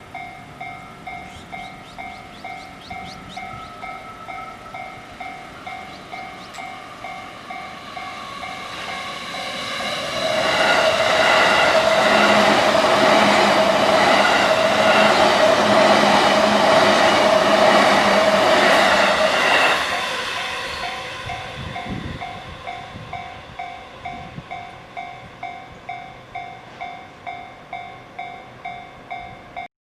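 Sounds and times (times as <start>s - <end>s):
electric train passing: 0.0s - 29.7s.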